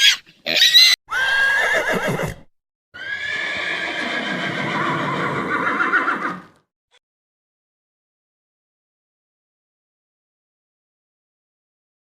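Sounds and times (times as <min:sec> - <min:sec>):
horse whinnying: 0:00.0 - 0:06.6.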